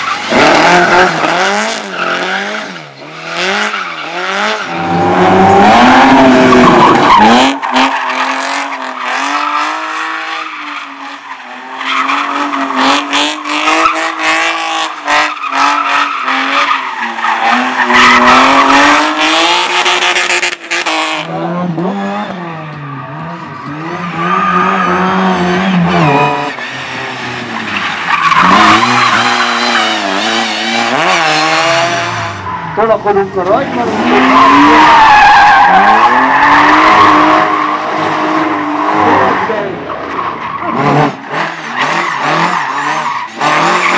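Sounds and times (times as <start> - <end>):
race car engine revving: 0.0 - 43.9.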